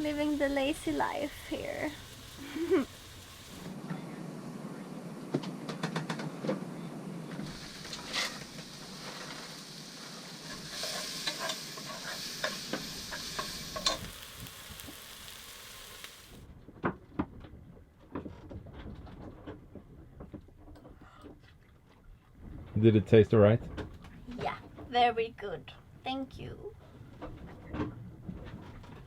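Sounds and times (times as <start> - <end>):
food sizzling in a frying pan: 0.0 - 3.8, 7.4 - 16.4.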